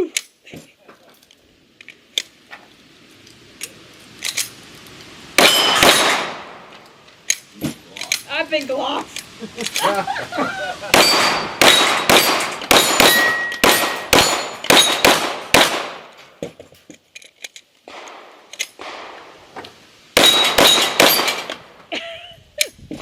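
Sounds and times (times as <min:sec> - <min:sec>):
steel targets ringing: 0:05.4 - 0:06.3, 0:10.9 - 0:15.3, 0:20.2 - 0:21.6
pistol shots: 0:05.4 - 0:06.6, 0:10.9 - 0:16.1, 0:17.9 - 0:19.3, 0:20.2 - 0:21.6.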